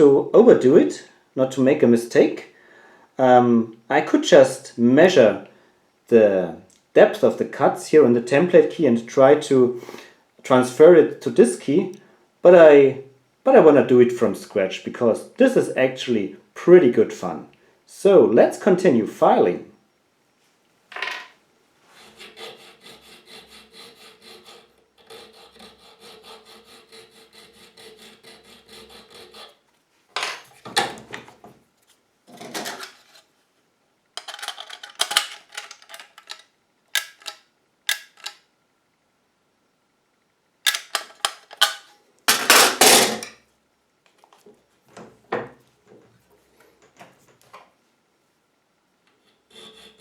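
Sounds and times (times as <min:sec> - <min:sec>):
hand file rasping on steel: 0:22.0 - 0:29.6, 0:49.2 - 0:50.0.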